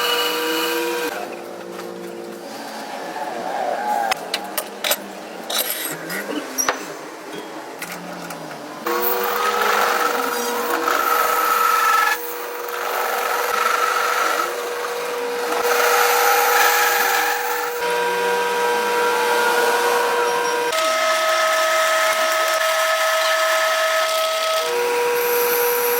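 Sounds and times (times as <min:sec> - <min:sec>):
power tool motor humming: 0:00.0 - 0:01.3, 0:08.9 - 0:25.9
rasping grinding of metal: 0:08.9 - 0:17.8.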